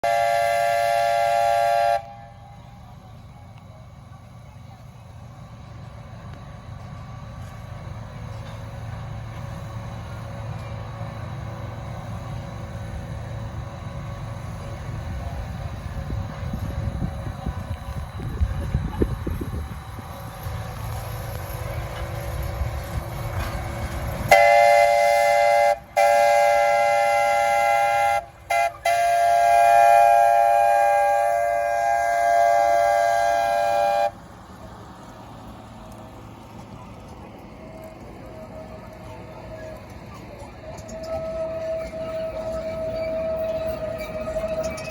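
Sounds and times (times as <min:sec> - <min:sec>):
locomotive horn chime: 0:00.0 - 0:02.6, 0:24.2 - 0:34.2, 0:40.6 - 0:44.9
train rumbling: 0:00.0 - 0:44.9.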